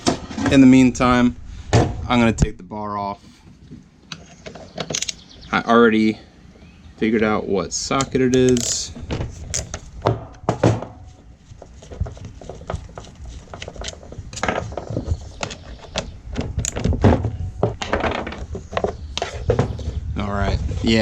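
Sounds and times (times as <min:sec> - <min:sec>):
metal parts being handled: 0:08.0 - 0:09.9.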